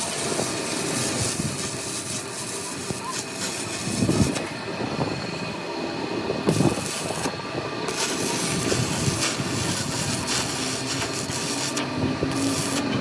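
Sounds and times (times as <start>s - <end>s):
high hiss of tool: 0.0s - 4.4s, 6.5s - 7.3s, 7.9s - 12.9s
workshop machinery running: 0.0s - 13.0s.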